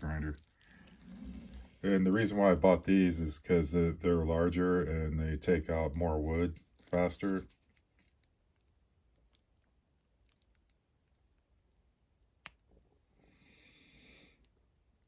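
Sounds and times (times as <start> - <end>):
soft rustle: 0.0 - 2.4, 6.5 - 11.2.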